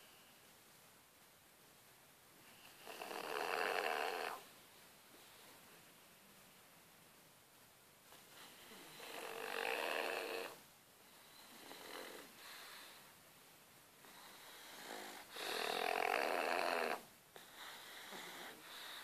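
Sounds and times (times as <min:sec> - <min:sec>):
dogs snoring loudly: 0:02.6 - 0:04.5, 0:08.4 - 0:10.6, 0:11.4 - 0:12.4, 0:14.1 - 0:19.0
soft breath: 0:04.5 - 0:06.4, 0:11.0 - 0:13.2, 0:17.3 - 0:19.0.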